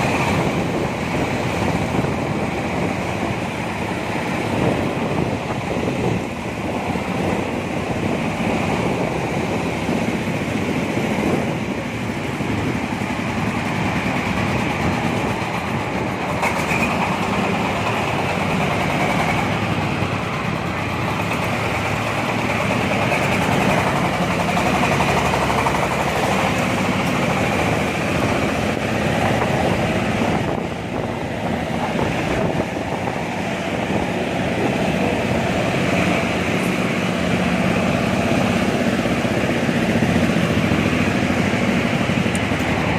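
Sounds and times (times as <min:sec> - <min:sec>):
diesel engine drone: 0:00.0 - 0:42.9
corn sheller mechanical din: 0:13.5 - 0:27.8.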